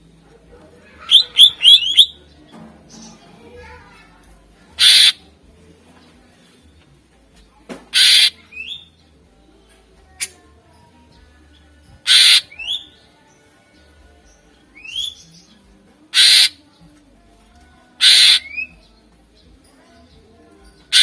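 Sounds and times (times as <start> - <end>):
bird harsh rasping bursts: 4.8 - 5.2, 7.9 - 8.4, 12.1 - 12.6, 16.2 - 16.6, 18.0 - 18.7.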